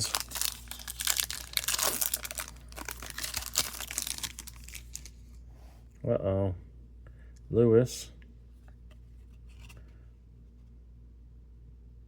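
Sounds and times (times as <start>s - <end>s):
cards being handled: 0.0s - 5.2s
foil wrapper crinkling: 0.0s - 5.2s.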